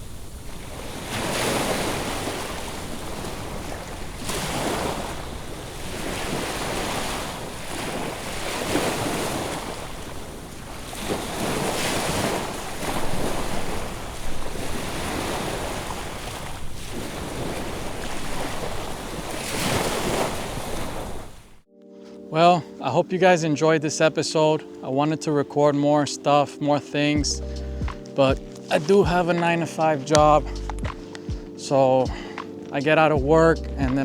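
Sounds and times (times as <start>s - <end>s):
low wind rumble: 0.0s - 21.6s, 27.2s - 29.3s
ocean surf breaking on beach: 0.0s - 21.6s.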